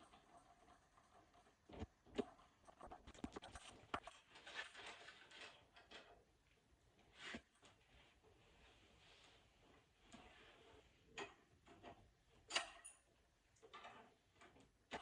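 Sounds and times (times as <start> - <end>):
faint knocks and clicks: 0.0 - 6.3.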